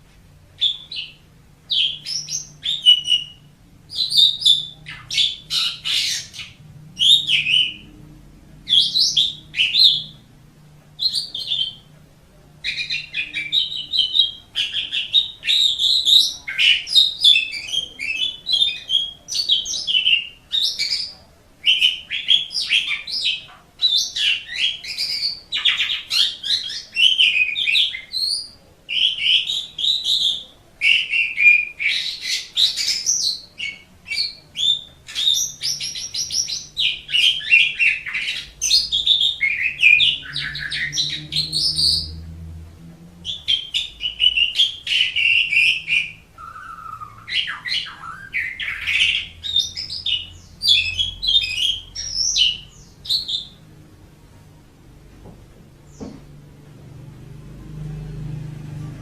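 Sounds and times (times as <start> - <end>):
starling singing: 0.6 - 42.5, 43.2 - 53.7.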